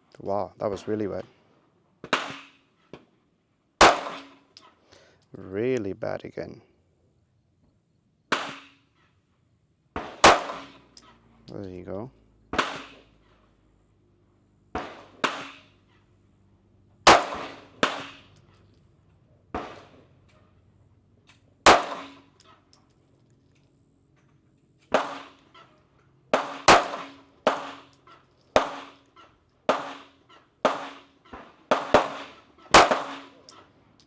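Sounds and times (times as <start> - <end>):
pistol shots: 2.0 - 2.7, 3.8 - 4.6, 8.3 - 8.8, 10.0 - 11.0, 12.5 - 13.2, 14.7 - 15.8, 17.0 - 18.4, 19.5 - 20.0, 21.6 - 22.4, 24.9 - 25.5, 26.3 - 29.0, 29.6 - 33.7.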